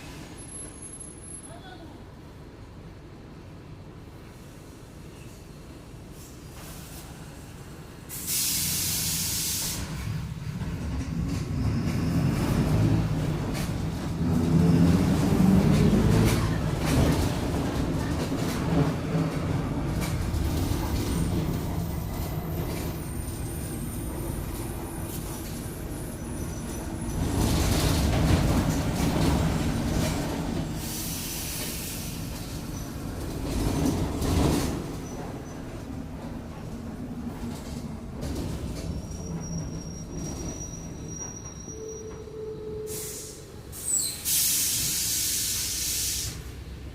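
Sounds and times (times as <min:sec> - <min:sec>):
bus diesel engine pulling: 0:05.8 - 0:42.3
compressed air hiss: 0:08.1 - 0:10.0, 0:30.8 - 0:32.5, 0:42.9 - 0:46.5.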